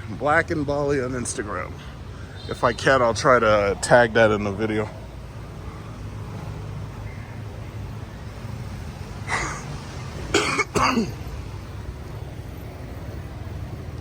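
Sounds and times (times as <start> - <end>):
man coughing and clearing throat: 9.3 - 11.2.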